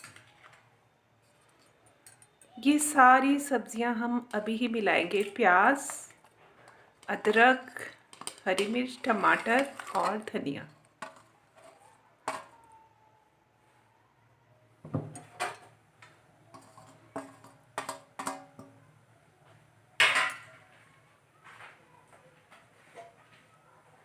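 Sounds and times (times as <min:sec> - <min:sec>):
metal utensils knocking on pot: 0:07.0 - 0:10.1, 0:16.6 - 0:18.8, 0:20.0 - 0:20.5.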